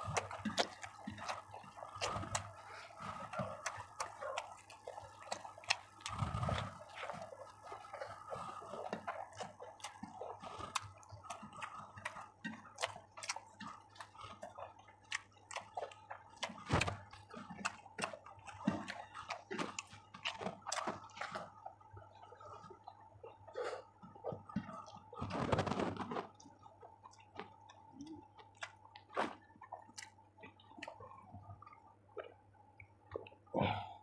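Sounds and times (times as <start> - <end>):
person chewing food: 0.0 - 34.0.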